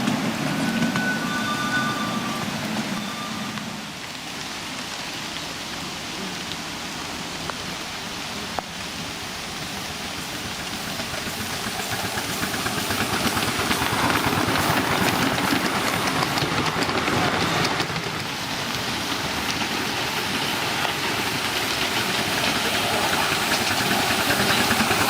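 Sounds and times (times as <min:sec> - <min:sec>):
miniature train running: 0:00.0 - 0:03.6, 0:08.8 - 0:25.0.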